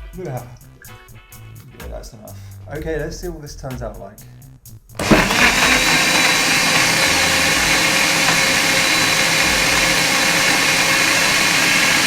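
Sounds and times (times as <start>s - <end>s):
electric blender running: 5.0s - 12.0s.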